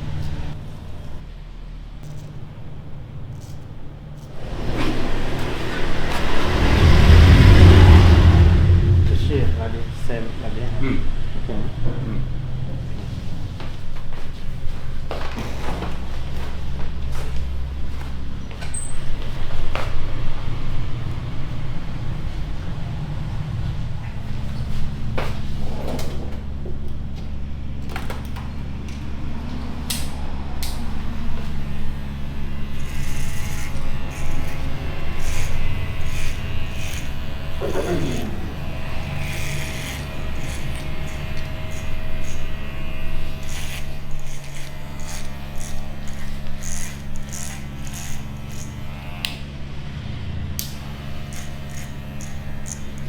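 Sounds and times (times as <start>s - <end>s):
hair clippers buzzing: 30.0s - 53.0s
clippers rubbing and clicking in hair: 39.2s - 49.4s, 50.6s - 53.0s.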